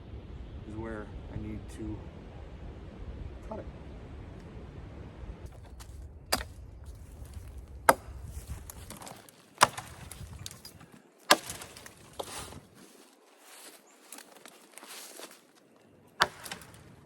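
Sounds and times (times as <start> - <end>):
hatchet chopping wood: 5.5 - 6.6, 7.8 - 12.6, 16.2 - 16.9.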